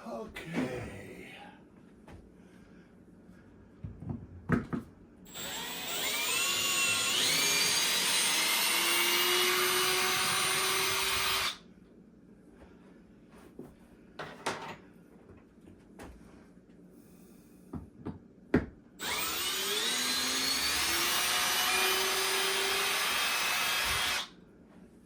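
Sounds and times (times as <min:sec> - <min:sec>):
drill motor whirring: 0:05.3 - 0:11.6, 0:19.0 - 0:24.3.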